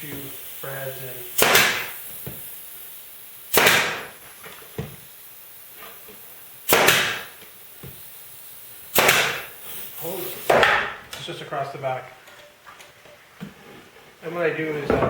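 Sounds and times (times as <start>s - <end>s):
nail gun pop with hiss: 0.0s - 11.2s.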